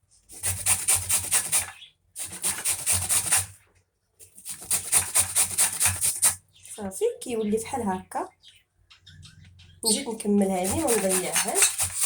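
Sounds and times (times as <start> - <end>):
turnip grating on a grater: 0.3 - 3.5, 4.3 - 6.4, 10.5 - 12.0.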